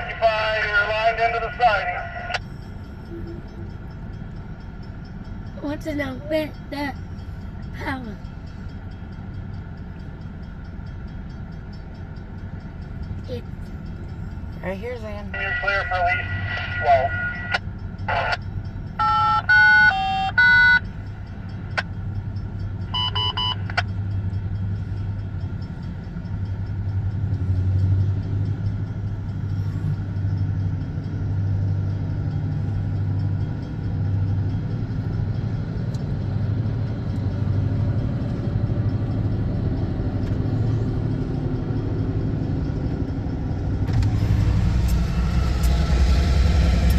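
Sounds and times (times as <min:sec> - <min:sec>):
diesel locomotive engine rumbling: 0:00.0 - 0:46.9
two-way radio tones: 0:15.3 - 0:18.4.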